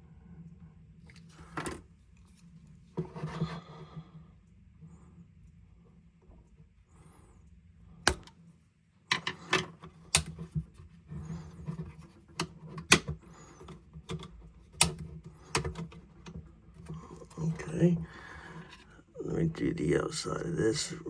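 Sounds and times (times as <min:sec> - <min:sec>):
plastic coffee machine part clicking: 0:08.1 - 0:08.3, 0:11.7 - 0:17.0.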